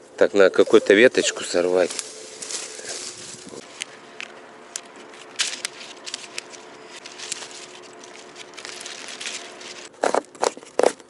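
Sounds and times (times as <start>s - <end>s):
leaves rustling: 0.2s - 9.9s
twigs crackling: 0.2s - 10.6s
branch snapping: 1.8s - 9.9s.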